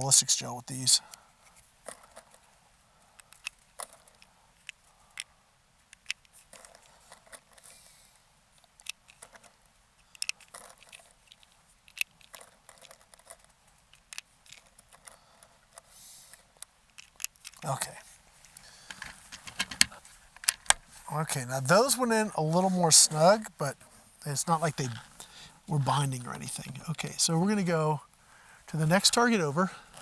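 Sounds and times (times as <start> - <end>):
small clicks and rustles of handling: 1.1 - 7.9, 8.5 - 20.9.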